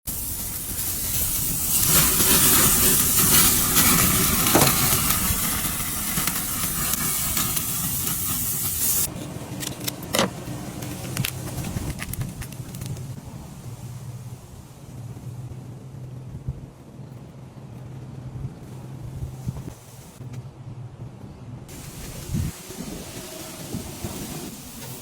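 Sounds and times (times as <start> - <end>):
food sizzling on grill: 0.1 - 9.1, 21.7 - 25.0.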